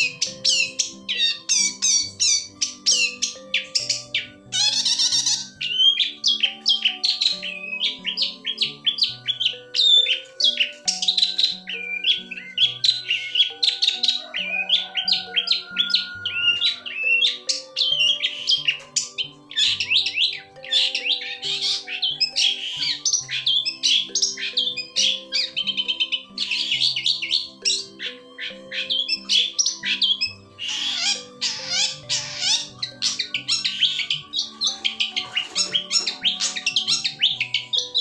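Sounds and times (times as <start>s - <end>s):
bird singing chattering notes: 0.0s - 38.0s
soft background music: 0.0s - 38.0s.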